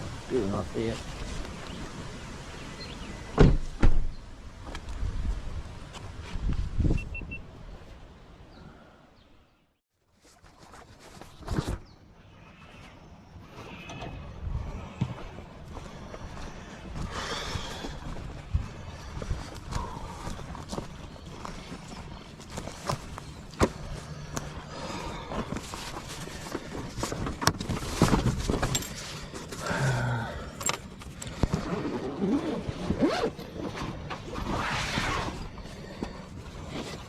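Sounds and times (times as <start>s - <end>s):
clicks and knocks of gear: 25.3s - 29.7s.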